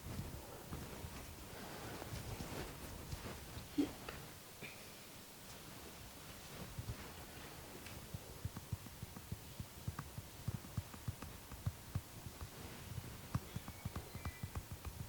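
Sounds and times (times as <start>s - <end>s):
hands tapping on a person: 7.9s - 15.0s.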